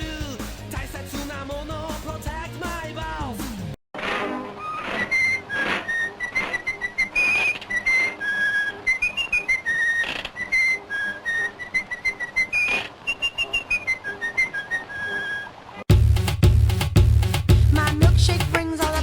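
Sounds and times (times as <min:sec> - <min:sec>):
whistled tune: 0:04.6 - 0:15.5.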